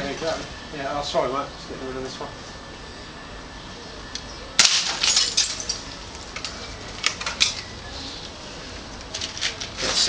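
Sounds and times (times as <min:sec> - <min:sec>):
glass breaking: 0:04.6 - 0:06.0
glass shards clattering: 0:04.6 - 0:07.7.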